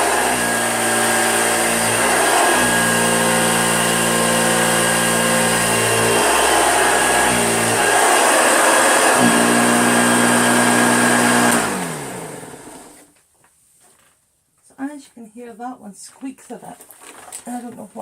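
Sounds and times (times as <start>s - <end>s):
vacuum motor winding down: 0.0s - 13.0s
upright vacuum cleaner running: 0.0s - 13.1s.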